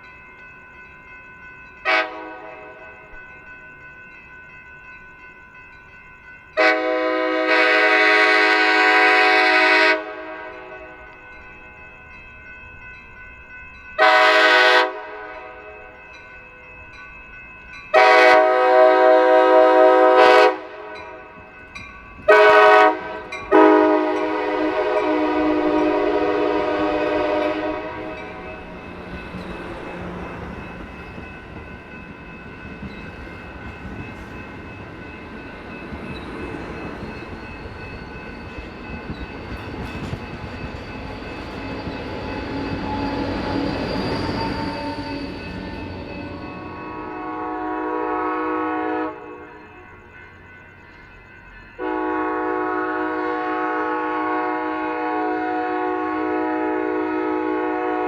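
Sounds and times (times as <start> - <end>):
train passing on rails: 0.0 - 58.0
train air horn: 1.9 - 2.8, 6.6 - 10.7, 14.0 - 15.5, 17.9 - 21.0, 22.3 - 28.6, 42.5 - 49.6, 51.8 - 58.0.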